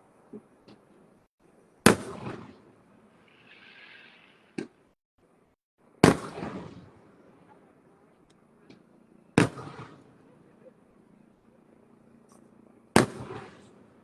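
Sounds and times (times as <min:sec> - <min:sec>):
firework booms: 0:01.8 - 0:03.5, 0:06.0 - 0:07.1, 0:09.4 - 0:10.2, 0:12.9 - 0:13.8.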